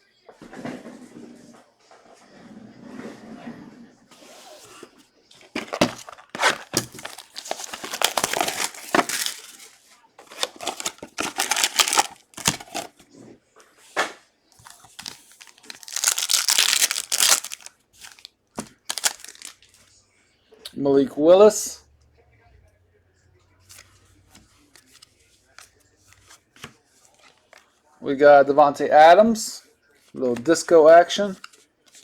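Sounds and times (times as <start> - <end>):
plastic wrapping torn and crinkled: 5.4 - 12.9, 14.6 - 19.6.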